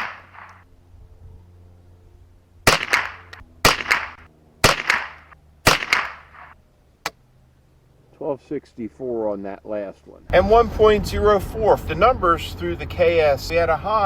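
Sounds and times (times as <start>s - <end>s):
rifle shots with ringing echo: 0.0s - 0.6s, 2.6s - 6.6s.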